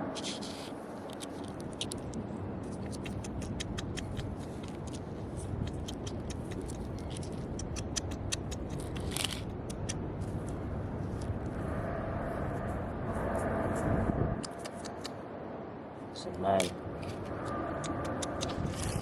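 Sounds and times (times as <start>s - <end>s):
low rumble: 8.9s - 16.0s.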